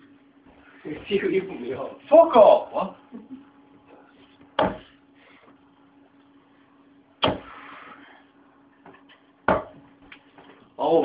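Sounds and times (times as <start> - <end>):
darts thudding into dartboard: 4.6 - 4.9, 7.2 - 7.5, 9.5 - 9.8.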